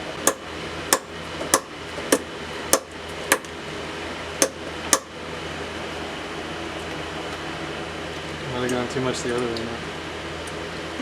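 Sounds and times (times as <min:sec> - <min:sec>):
hammer blows on steel: 0:00.3 - 0:03.5, 0:04.4 - 0:05.1.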